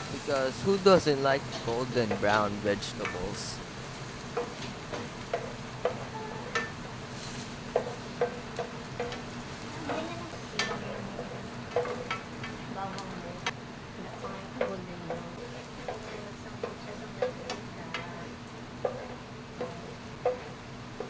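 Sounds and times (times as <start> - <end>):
onions sizzling in oil: 0.0 - 21.0.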